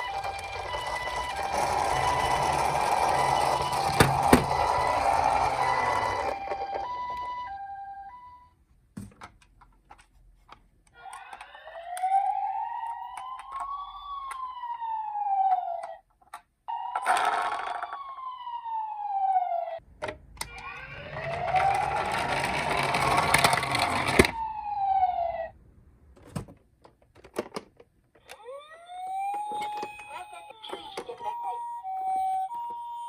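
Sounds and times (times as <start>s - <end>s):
toy siren wailing: 0.0s - 8.5s, 10.9s - 16.0s, 16.7s - 19.8s, 20.4s - 25.5s, 28.2s - 33.0s.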